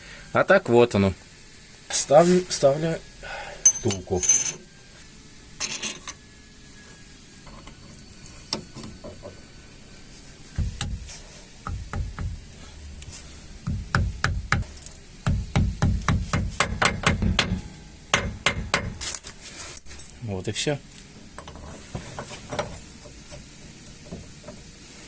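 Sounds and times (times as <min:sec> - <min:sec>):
low thuds: 0:10.6 - 0:12.6, 0:13.6 - 0:19.0
metal clicks and knocks: 0:16.0 - 0:19.1.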